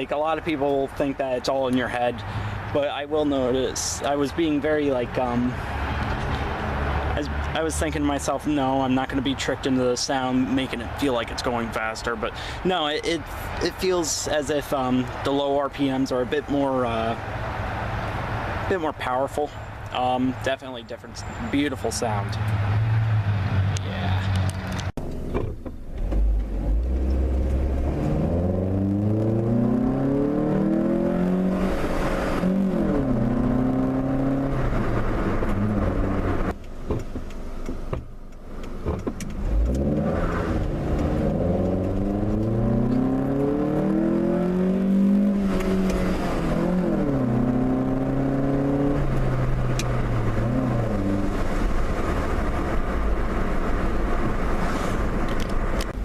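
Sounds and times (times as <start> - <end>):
car engine accelerating: 21.3 - 37.9, 38.5 - 56.0.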